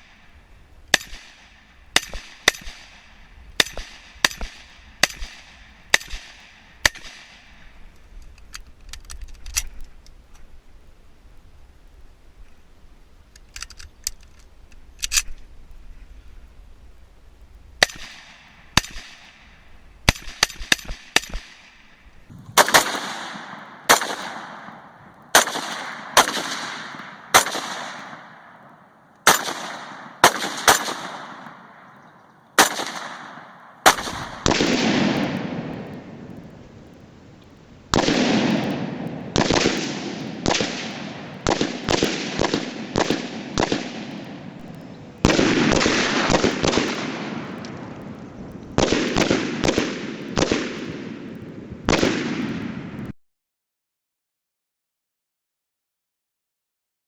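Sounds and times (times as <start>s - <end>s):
rifle shots echoing: 0.0s - 7.8s, 17.8s - 36.5s, 37.9s - 53.1s
steady hiss: 0.0s - 51.8s.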